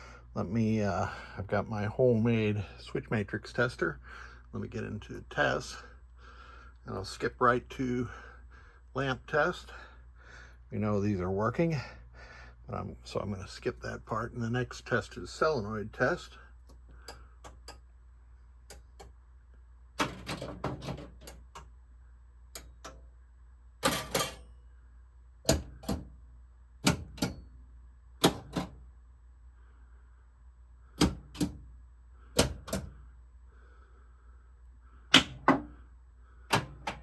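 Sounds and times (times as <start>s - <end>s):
pinball machine solenoids clacking: 20.0s - 21.7s, 23.8s - 24.4s, 26.8s - 27.5s.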